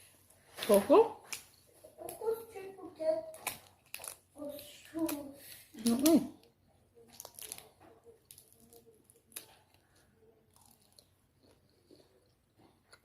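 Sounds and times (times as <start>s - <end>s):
person chewing food: 3.3s - 13.0s.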